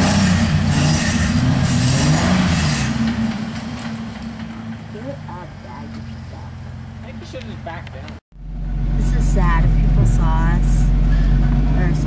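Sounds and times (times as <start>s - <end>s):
rushing noise: 0.0s - 6.9s
off-road engine revving: 0.0s - 12.0s.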